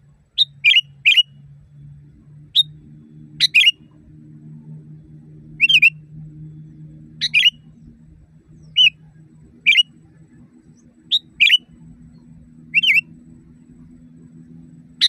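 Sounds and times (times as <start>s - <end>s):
faint low hum: 0.0s - 15.0s
bulbul chirping: 0.4s - 1.3s, 3.4s - 3.8s, 5.6s - 6.0s, 7.1s - 7.8s, 8.6s - 10.0s, 10.8s - 13.8s.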